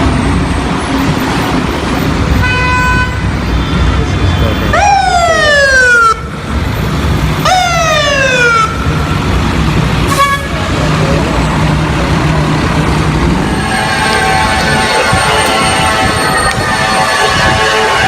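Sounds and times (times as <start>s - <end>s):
fire truck siren: 2.4s - 18.0s
low engine rumble: 6.3s - 18.0s
horn toot: 10.0s - 10.8s, 13.4s - 18.0s.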